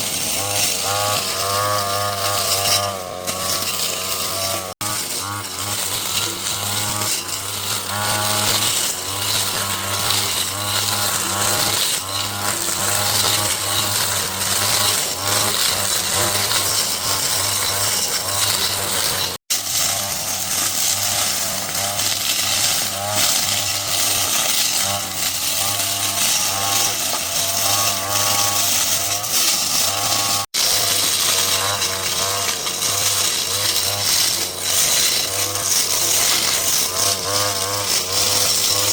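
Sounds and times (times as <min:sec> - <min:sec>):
two-stroke garden tool engine: 0:00.0 - 0:38.9.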